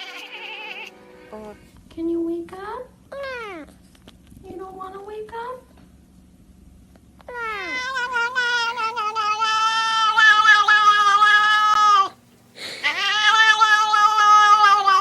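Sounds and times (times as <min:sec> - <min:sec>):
cat yowling: 0:00.0 - 0:00.9, 0:07.3 - 0:12.2, 0:12.8 - 0:15.0.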